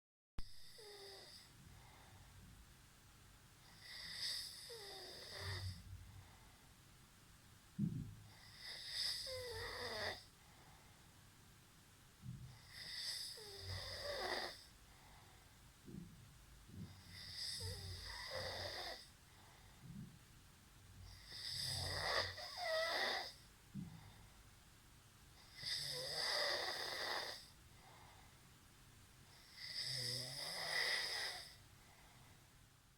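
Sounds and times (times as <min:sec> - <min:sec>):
snoring with whistling note: 0:29.6 - 0:31.5.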